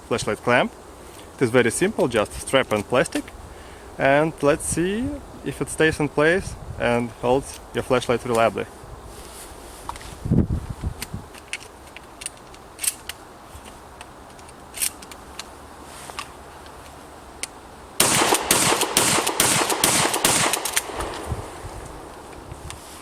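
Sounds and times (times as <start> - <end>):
shotgun shots: 18.0 - 22.5.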